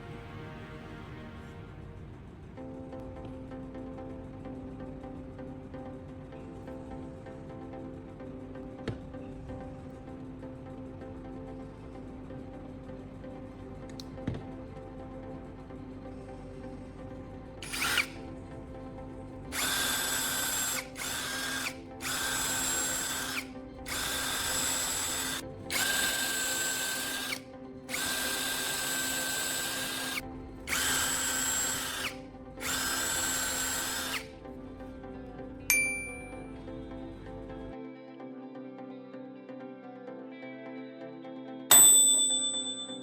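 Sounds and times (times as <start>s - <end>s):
background music: 0.0s - 43.0s
electric drill whining: 17.6s - 18.3s, 19.5s - 34.4s.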